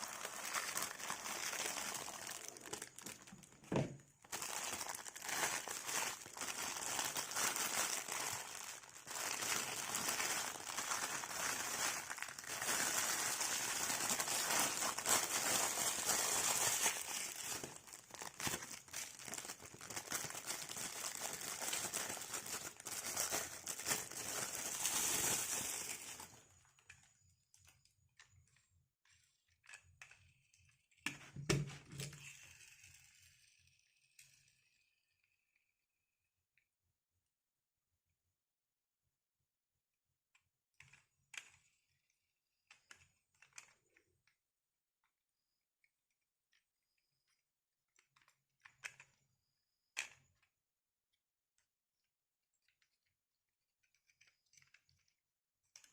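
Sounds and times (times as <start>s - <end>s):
packaging crinkling: 0.0s - 26.4s.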